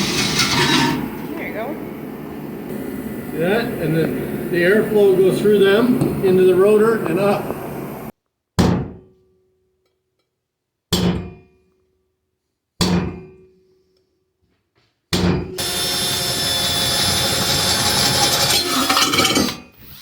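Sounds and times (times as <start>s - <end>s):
power tool grinding steel: 0.0s - 7.8s, 15.6s - 20.0s.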